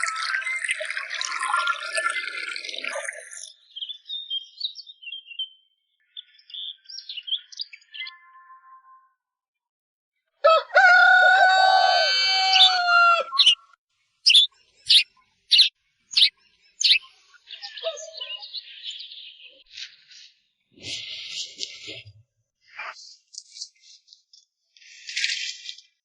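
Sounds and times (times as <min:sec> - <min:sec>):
rooster crowing: 0:10.4 - 0:13.6
short sharp bird chirps: 0:13.3 - 0:13.6, 0:14.3 - 0:17.2.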